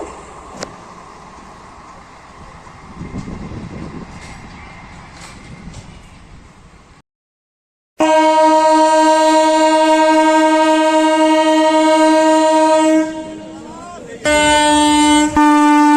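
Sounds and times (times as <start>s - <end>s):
train horn blast: 8.0s - 15.9s.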